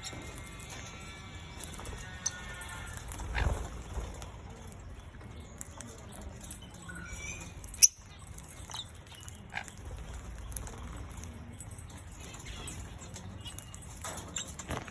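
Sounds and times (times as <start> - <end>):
wings flapping and rustling: 0.0 - 5.0, 9.6 - 14.9
parrots chirping: 0.0 - 14.9.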